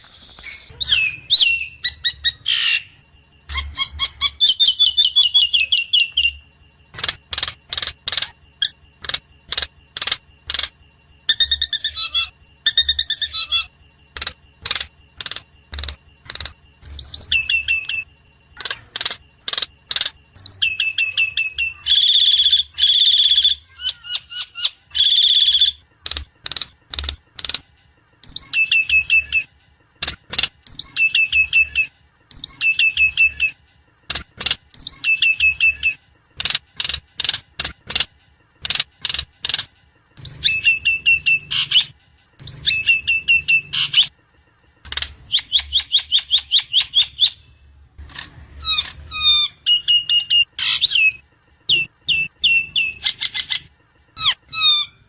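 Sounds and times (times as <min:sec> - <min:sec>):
harsh screeching bird calls: 0:00.0 - 0:25.8, 0:48.6 - 0:55.0.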